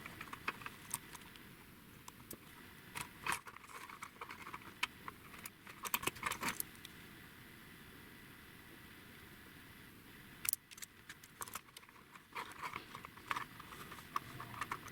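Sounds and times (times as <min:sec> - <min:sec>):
clicks of small hard parts handled: 0:10.4 - 0:14.9.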